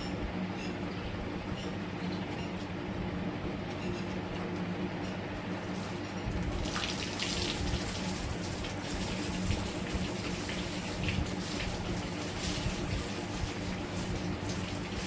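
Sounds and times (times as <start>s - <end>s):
heavy rain pouring and splashing: 6.5s - 15.0s.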